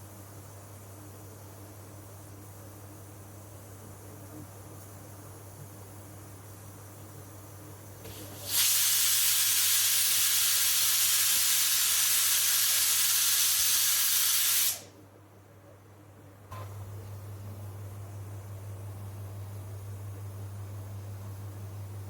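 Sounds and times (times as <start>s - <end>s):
pressure cooker steam hiss: 8.0s - 14.9s.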